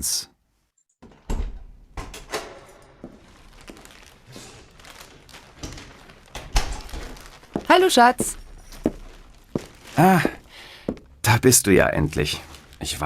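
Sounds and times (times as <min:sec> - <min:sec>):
door opening and closing: 0:01.0 - 0:03.0, 0:05.5 - 0:07.2
rustling: 0:03.0 - 0:11.0, 0:12.1 - 0:13.0.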